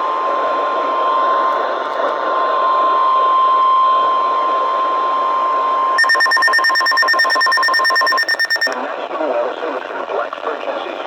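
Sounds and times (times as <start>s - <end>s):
loud steady alarm tone: 6.0s - 8.8s
rapid electronic beeping: 6.0s - 8.8s.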